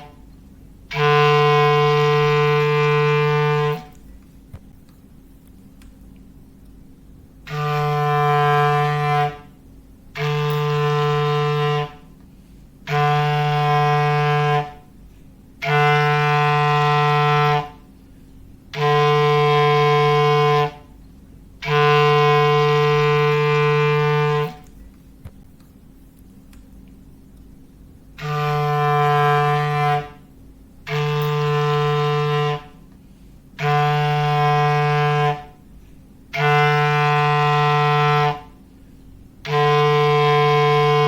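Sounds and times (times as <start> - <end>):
clarinet foghorn blasts: 0.0 - 4.1, 7.3 - 18.0, 18.6 - 21.0, 21.6 - 24.8, 28.1 - 38.8, 39.4 - 41.0.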